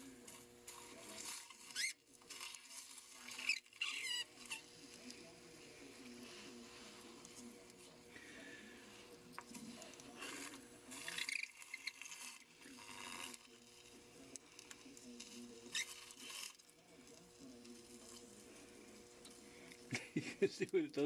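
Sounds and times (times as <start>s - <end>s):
dry ice scraping metal: 0.0s - 20.0s
short high squeaks: 3.3s - 4.6s.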